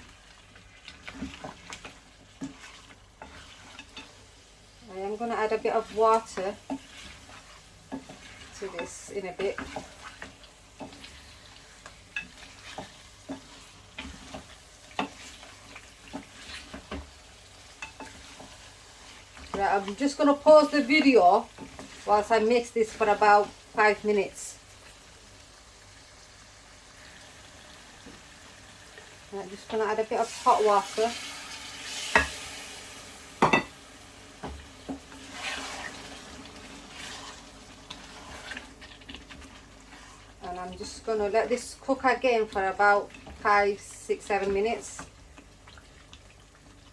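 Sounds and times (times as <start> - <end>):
spices sizzling in oil: 0.0 - 46.9
spoon scraping a frying pan: 0.6 - 24.2, 29.0 - 32.7, 33.4 - 33.8, 34.4 - 45.9
spoon knocking against pan: 33.4 - 33.8.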